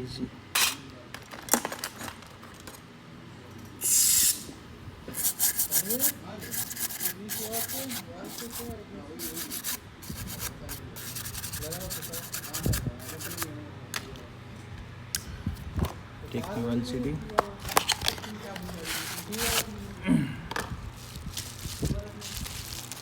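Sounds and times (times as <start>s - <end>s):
hand tool scraping phone frame: 5.1s - 13.5s.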